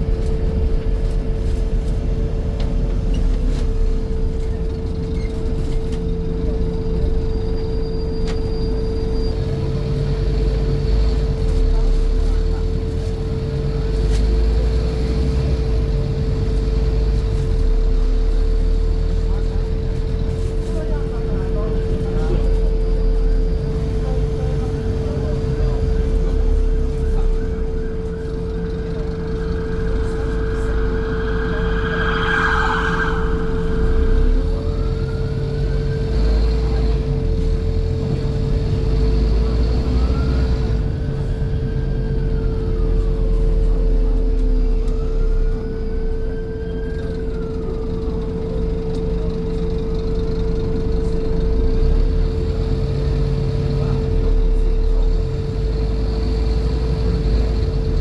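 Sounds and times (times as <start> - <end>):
bus engine running: 0.0 - 30.9, 34.1 - 45.7, 46.3 - 58.0
whine rising and falling: 27.9 - 35.2
steady buzz: 28.1 - 35.1.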